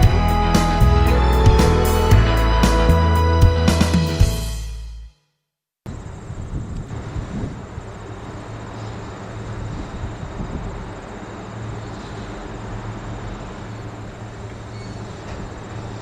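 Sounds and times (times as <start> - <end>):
machine hum and hiss: 5.9 - 16.0.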